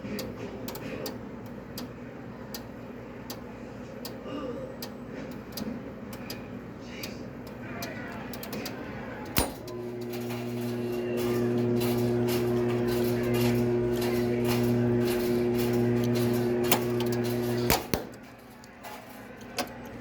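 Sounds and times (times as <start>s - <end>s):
noisy background: 0.0s - 20.0s
steady electrical hum: 0.0s - 20.0s
washing machine clicks: 4.8s - 20.0s.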